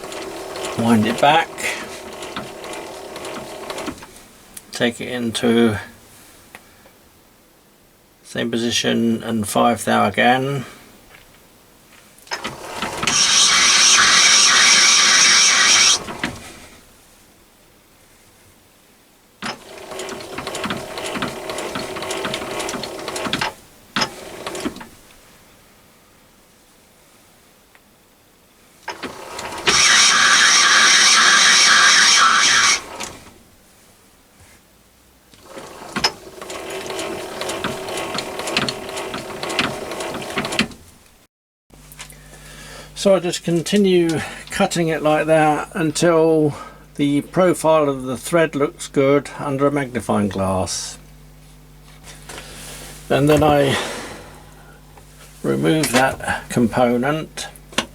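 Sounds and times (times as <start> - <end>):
lathe running with high whine: 0.0 - 4.1, 12.3 - 16.6, 19.4 - 24.8, 28.9 - 33.4, 35.4 - 40.7
gear train rattling and clicking: 0.0 - 4.7, 12.2 - 16.6, 19.4 - 25.1, 28.8 - 33.4, 35.4 - 40.8, 55.0 - 57.9
lathe switch clicks: 35.4 - 40.8.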